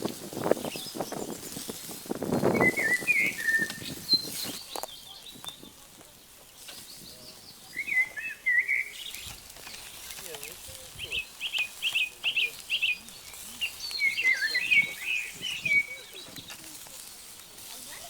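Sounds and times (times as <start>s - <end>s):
songbird chirping: 0.4s - 18.0s
rustling clicking noise: 1.5s - 7.0s, 9.0s - 14.1s, 15.5s - 18.0s.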